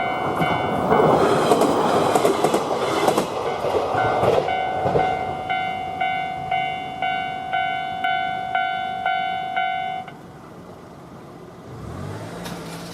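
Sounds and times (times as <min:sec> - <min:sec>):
level crossing warning bell: 0:00.0 - 0:01.0, 0:03.5 - 0:10.2.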